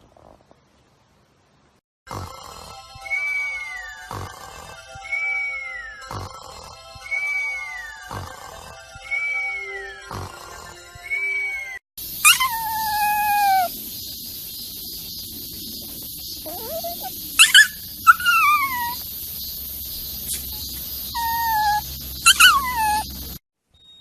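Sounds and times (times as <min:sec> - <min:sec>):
puppy whining: 0:03.0 - 0:06.3, 0:07.0 - 0:13.7, 0:16.4 - 0:19.4, 0:20.1 - 0:23.4.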